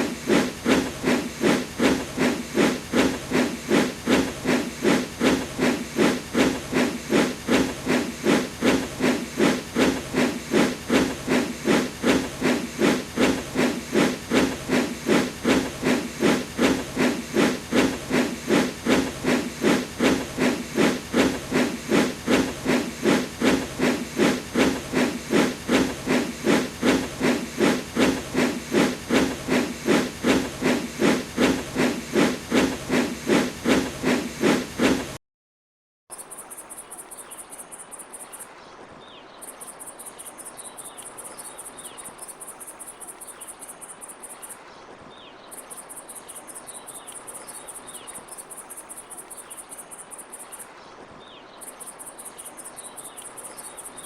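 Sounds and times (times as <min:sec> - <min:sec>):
steam locomotive puffing: 0:00.0 - 0:35.2.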